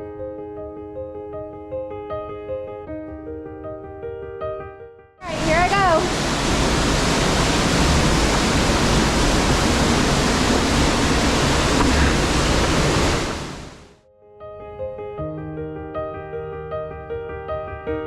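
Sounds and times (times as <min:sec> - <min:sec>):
waterfall and creek rushing: 0:05.2 - 0:13.9.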